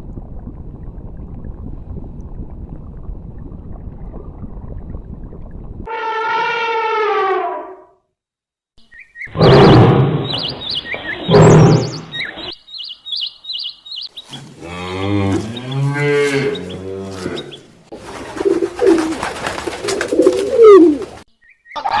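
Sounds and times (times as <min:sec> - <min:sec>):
sliding animal cries: 0:05.9 - 0:07.8
high bird chirps: 0:08.8 - 0:14.5, 0:21.3 - 0:22.0
loud noisy animal calls: 0:09.3 - 0:12.5
cow mooing: 0:14.6 - 0:17.5.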